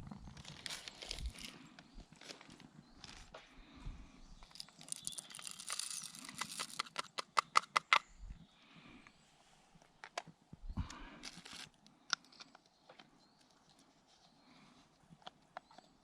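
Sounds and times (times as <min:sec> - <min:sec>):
rustling and handling noises: 0:00.0 - 0:03.8, 0:04.4 - 0:07.9, 0:09.7 - 0:16.0
sharp clicks: 0:06.2 - 0:08.1.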